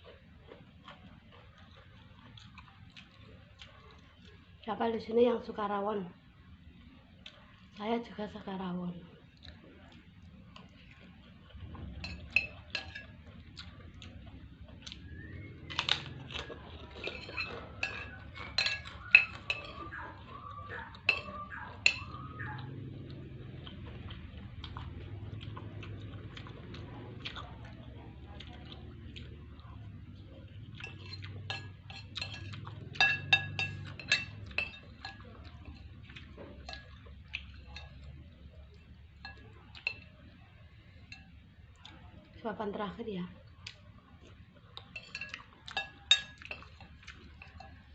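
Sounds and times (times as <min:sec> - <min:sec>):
cutlery clinking on a dish: 0:11.6 - 0:13.4, 0:15.7 - 0:22.8, 0:30.5 - 0:38.2, 0:39.2 - 0:40.4, 0:44.8 - 0:47.9.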